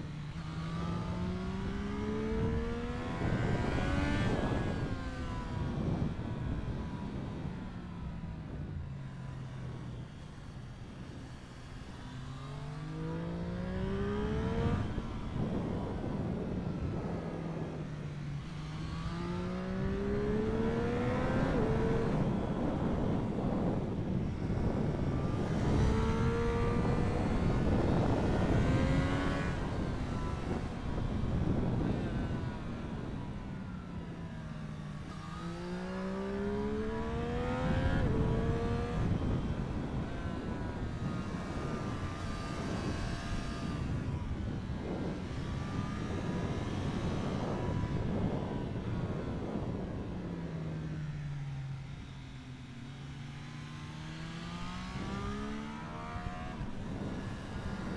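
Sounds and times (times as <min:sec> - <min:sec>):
wind noise: 0:00.0 - 0:10.1, 0:13.0 - 0:52.3, 0:53.2 - 0:57.9
motorcycle engine revving: 0:18.5 - 0:23.4, 0:25.1 - 0:32.6, 0:34.7 - 0:43.9, 0:52.9 - 0:57.9.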